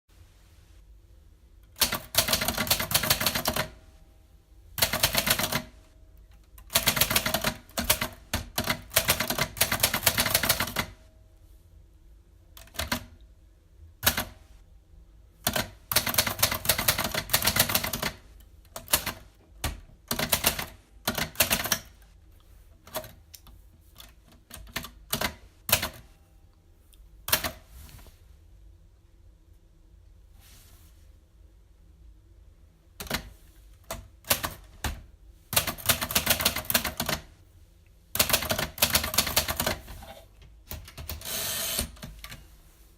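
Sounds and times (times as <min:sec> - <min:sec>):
typewriter keys clattering: 0:06.6 - 0:10.9.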